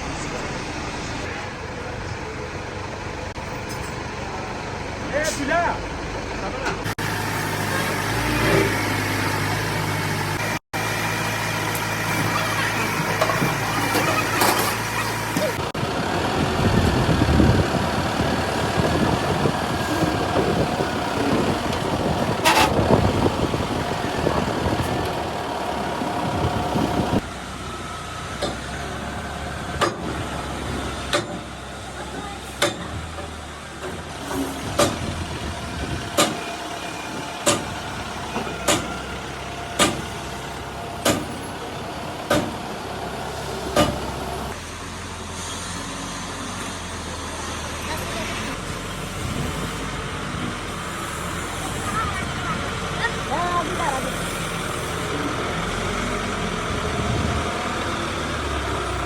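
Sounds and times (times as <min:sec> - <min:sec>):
truck engine running: 0:00.0 - 0:59.0
workshop noise: 0:03.2 - 0:16.6, 0:27.9 - 0:55.9.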